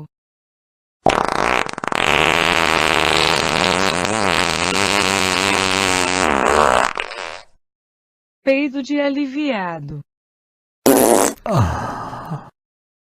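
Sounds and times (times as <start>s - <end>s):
fart sound effect: 1.0s - 7.6s, 10.9s - 11.4s.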